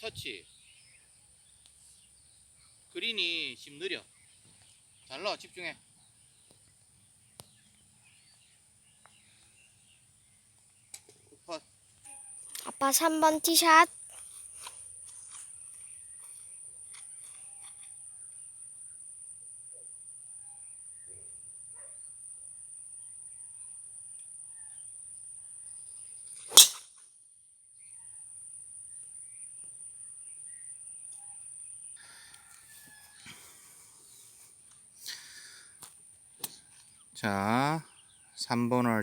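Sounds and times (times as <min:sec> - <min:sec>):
golf club striking ball: 0:26.5 - 0:26.9.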